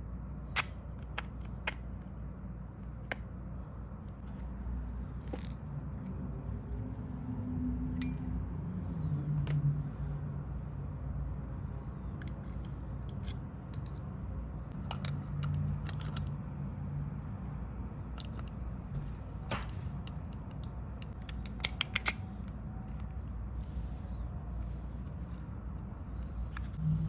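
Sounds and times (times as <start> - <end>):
steady low hum: 0.0 - 27.0
small parts and tools clicking: 12.1 - 16.6, 18.0 - 18.8, 19.4 - 26.8.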